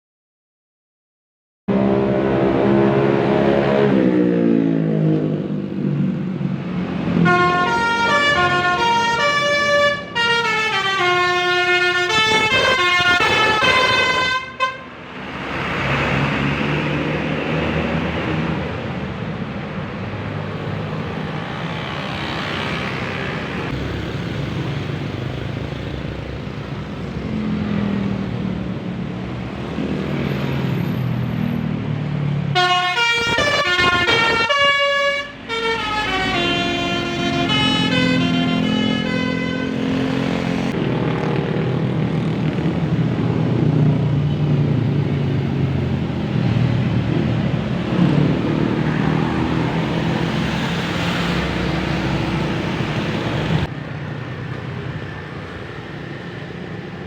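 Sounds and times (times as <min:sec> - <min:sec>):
musical bus horn tune: 0:07.2 - 0:15.0, 0:32.5 - 0:40.1
bus engine running: 0:32.5 - 0:53.7.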